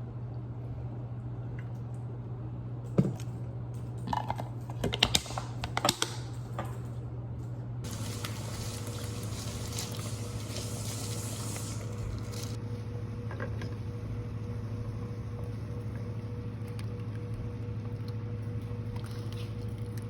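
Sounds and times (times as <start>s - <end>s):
low steady hum: 0.0s - 20.0s
kitchen tap running into sink: 7.9s - 12.6s.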